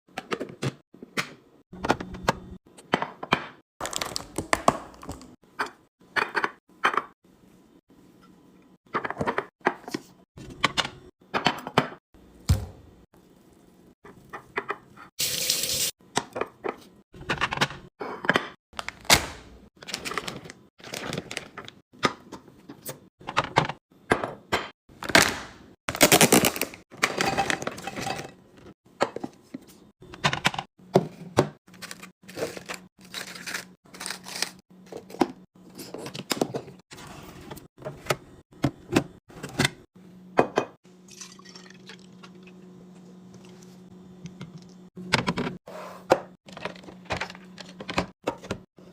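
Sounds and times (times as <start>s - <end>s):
containers clattering: 26.3s - 28.4s.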